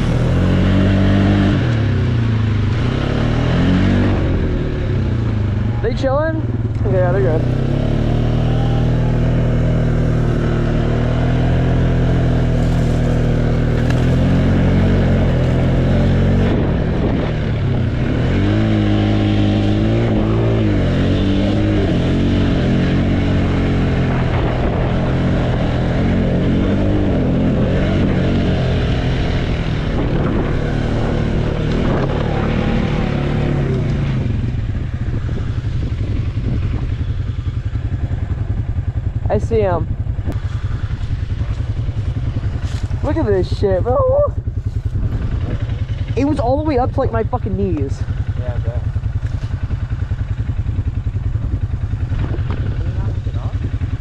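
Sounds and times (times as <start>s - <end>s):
atv engine revving: 0.0s - 54.0s.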